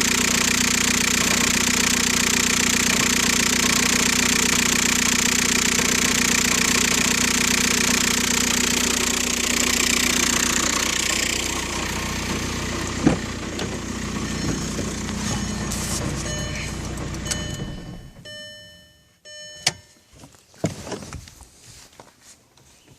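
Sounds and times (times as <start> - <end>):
diesel engine idling: 0.0 - 18.4
transmission noise: 10.1 - 20.1.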